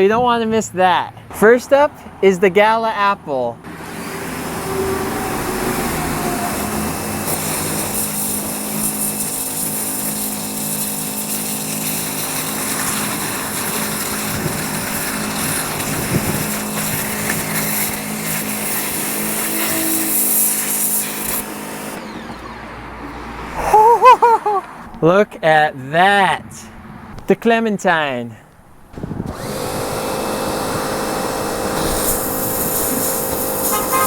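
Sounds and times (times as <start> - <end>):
pressure washer motor hum: 3.6 - 23.5, 29.0 - 34.0
high-pressure water jet hissing: 3.7 - 22.2, 29.0 - 34.0.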